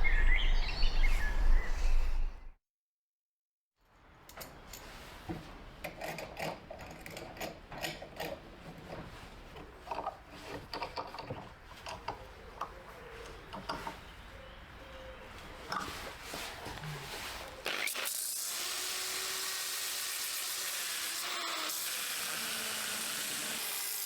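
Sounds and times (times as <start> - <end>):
tools clicking and scraping wood: 5.8 - 14.1.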